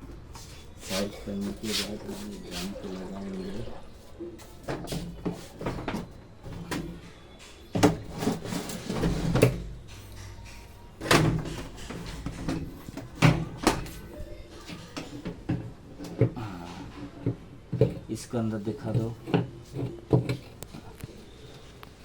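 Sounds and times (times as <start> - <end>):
washing machine parts clunking: 4.6 - 21.2.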